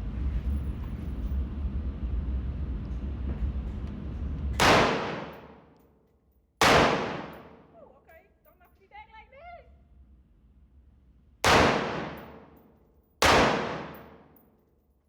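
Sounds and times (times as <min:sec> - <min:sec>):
steady low rumble: 0:00.0 - 0:05.8, 0:06.6 - 0:07.8, 0:09.6 - 0:14.4
gunshots: 0:04.6 - 0:05.6, 0:06.6 - 0:07.6, 0:11.4 - 0:12.6, 0:13.2 - 0:14.4.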